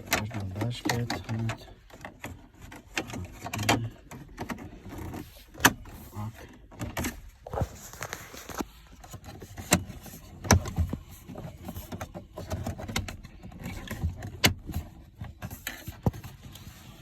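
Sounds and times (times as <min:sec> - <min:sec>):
handling noise: 0:00.0 - 0:16.8.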